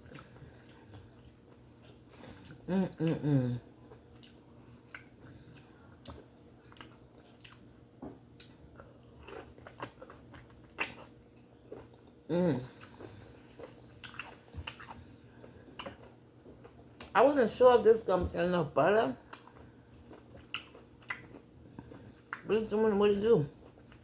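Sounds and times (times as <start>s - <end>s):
wet chewing mouth sounds: 0.0s - 7.7s, 8.4s - 17.2s, 19.2s - 22.5s
person humming: 2.7s - 3.6s, 12.3s - 12.8s.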